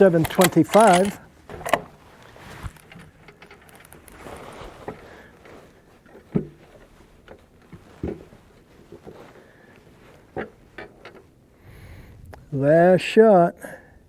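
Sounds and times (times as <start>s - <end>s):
rifle bolt clicking and clacking: 0.0s - 2.0s, 2.6s - 4.2s.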